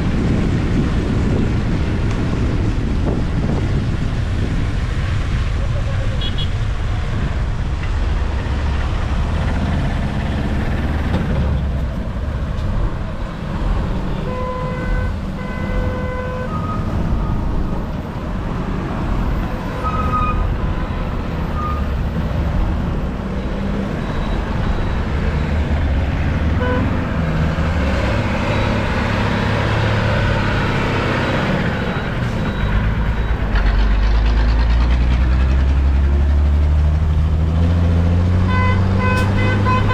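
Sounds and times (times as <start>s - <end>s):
traffic rumble and road noise: 0.0s - 39.9s
vehicle horn tooting: 6.1s - 6.6s, 14.2s - 16.9s, 26.6s - 26.9s, 38.4s - 39.9s.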